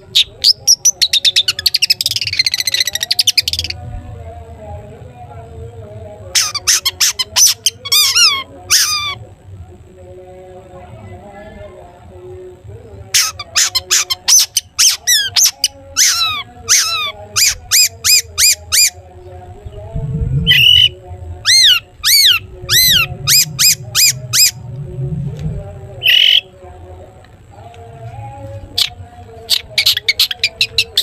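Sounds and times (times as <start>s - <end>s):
bird whistled song: 20.4s - 24.6s.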